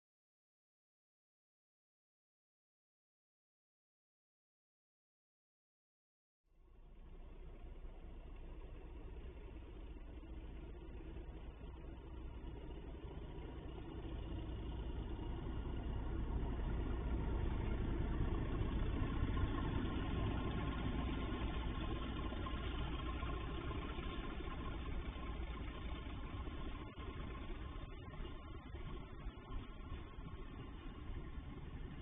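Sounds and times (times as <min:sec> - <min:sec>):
diesel locomotive engine hauling train: 0:06.8 - 0:32.0.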